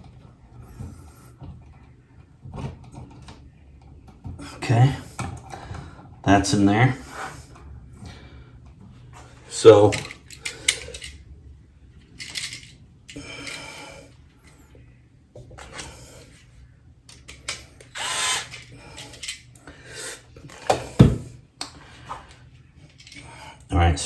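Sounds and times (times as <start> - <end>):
electric screwdriver whirring: 17.9 - 18.7.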